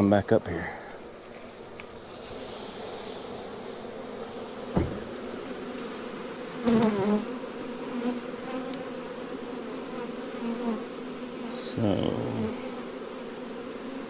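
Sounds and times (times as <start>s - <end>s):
bee swarm buzzing: 0.0s - 14.0s
sharp knock: 4.8s - 5.4s.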